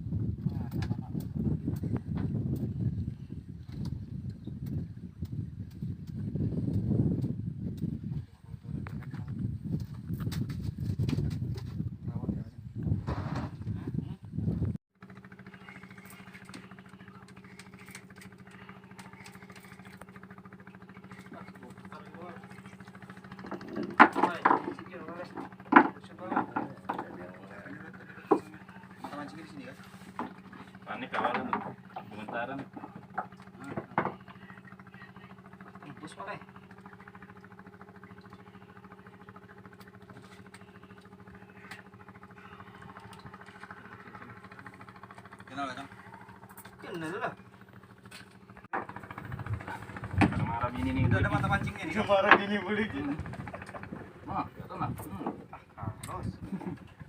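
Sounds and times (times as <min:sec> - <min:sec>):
small engine idling: 0:15.0 - 0:57.0.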